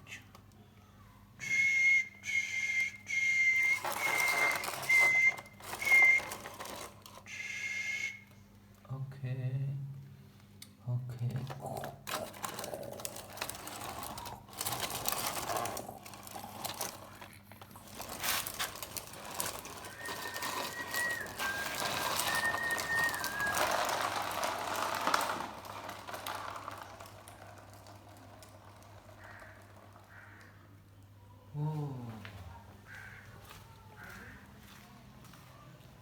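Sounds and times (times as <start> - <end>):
plastic wheels rattling on floor: 1.4 - 8.2, 11.3 - 30.8
toy car motors whirring: 1.5 - 8.0, 11.6 - 30.5.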